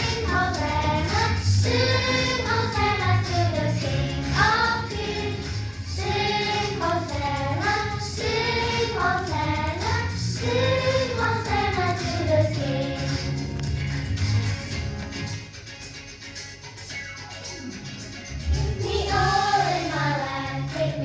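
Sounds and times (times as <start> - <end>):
children's choir singing: 0.0 - 13.5, 18.5 - 21.0
low instrumental accompaniment: 9.4 - 15.5.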